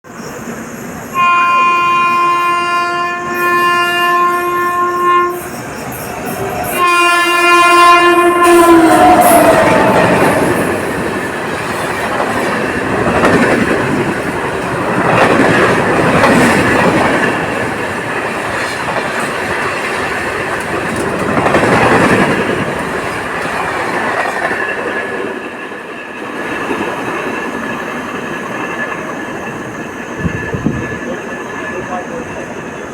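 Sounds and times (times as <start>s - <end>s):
train rumble: 0.1s - 32.9s
train horn blasts: 1.1s - 10.8s
wheels clacking over rails: 9.0s - 29.7s.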